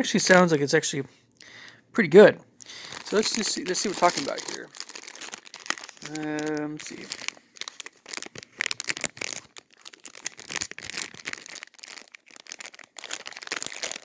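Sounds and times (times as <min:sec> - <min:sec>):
plastic candy packaging crinkling: 0:02.6 - 0:14.0.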